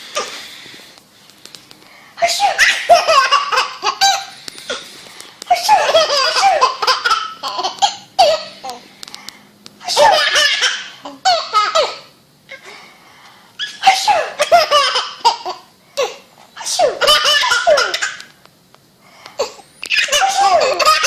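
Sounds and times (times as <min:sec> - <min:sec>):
baby laughing: 0:02.2 - 0:04.4, 0:05.5 - 0:08.7, 0:09.8 - 0:12.6, 0:13.6 - 0:18.3, 0:19.5 - 0:21.0.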